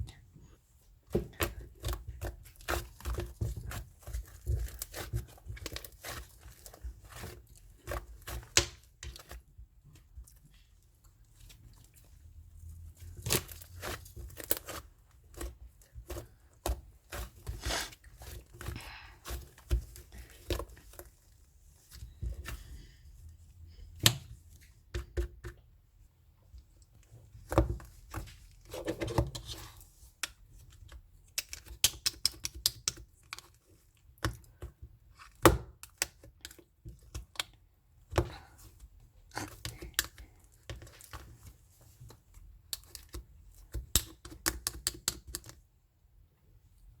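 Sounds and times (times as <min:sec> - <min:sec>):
slime clicking and crackling: 0:31.2 - 0:33.5.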